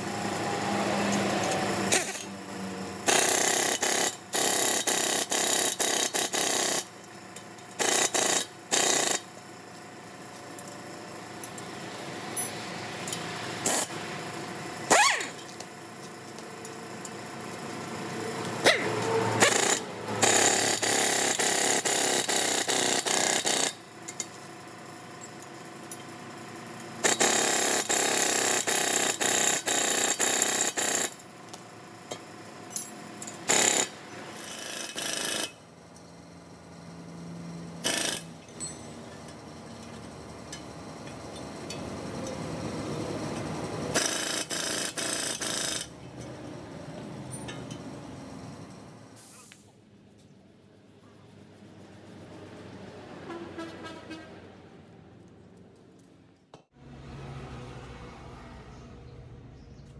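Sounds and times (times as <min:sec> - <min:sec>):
metal knocks and clinks: 0:38.4 - 0:40.7.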